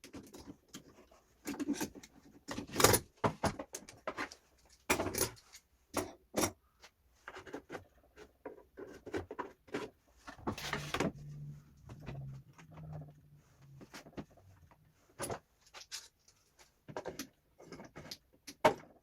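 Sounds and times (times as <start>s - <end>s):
tools and wood knocking on workbench: 0.0s - 4.3s, 4.9s - 6.6s, 16.8s - 19.0s
low steady hum: 10.3s - 15.1s.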